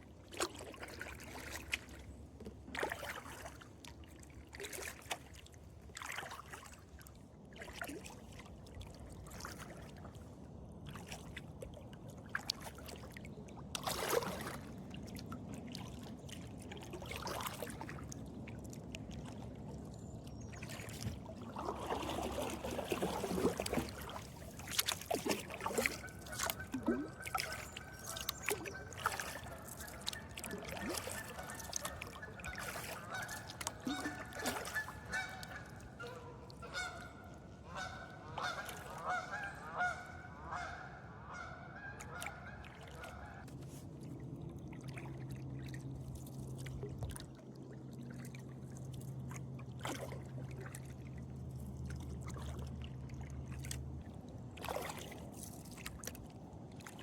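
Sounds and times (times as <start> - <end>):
water splashing: 2.7 - 10.2, 12.2 - 40.0, 42.1 - 57.0
geese honking: 28.7 - 42.4.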